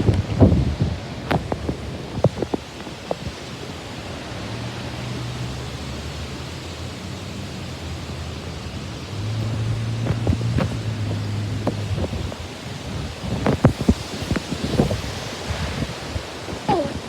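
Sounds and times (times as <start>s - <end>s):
rain: 0.0s - 17.0s
storm wind: 0.0s - 17.0s.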